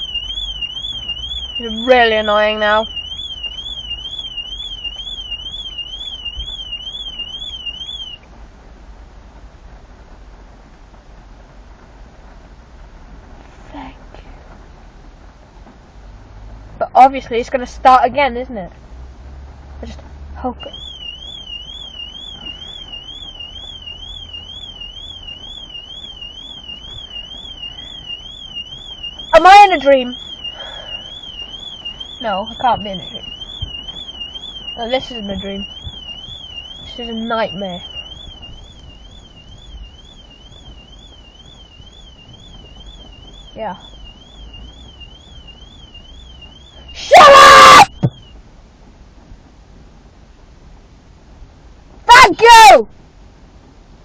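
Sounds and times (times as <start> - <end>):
car alarm warbling siren: 0.0 - 8.2, 20.4 - 48.4, 52.1 - 52.9.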